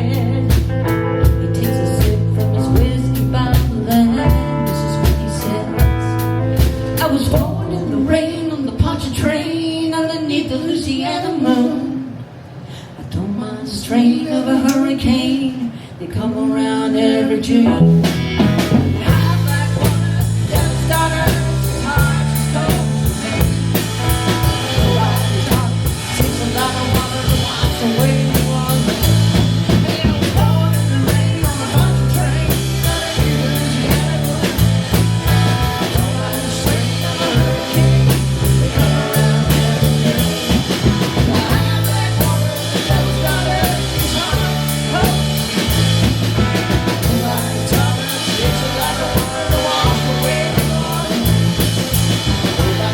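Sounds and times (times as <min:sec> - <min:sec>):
drum kit: 0:00.0 - 0:07.8, 0:17.8 - 0:52.9
electric guitar: 0:00.0 - 0:09.2, 0:17.4 - 0:52.9
repeating bass line: 0:17.8 - 0:52.9.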